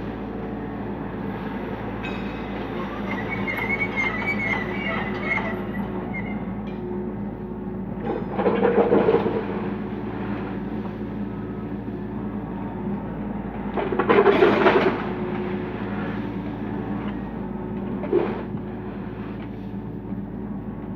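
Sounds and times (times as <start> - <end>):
excavator diesel engine running: 0.0 - 20.9.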